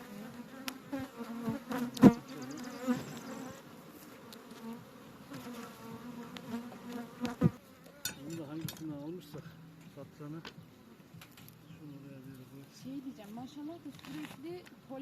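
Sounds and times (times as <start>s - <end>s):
bees buzzing: 0.0s - 8.3s.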